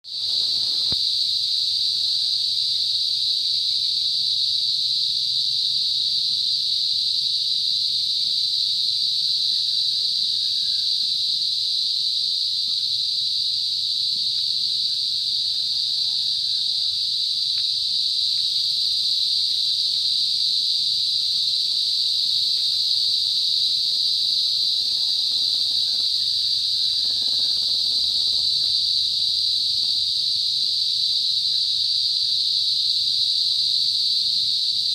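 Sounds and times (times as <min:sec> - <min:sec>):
crickets chirping: 0:00.0 - 0:34.9.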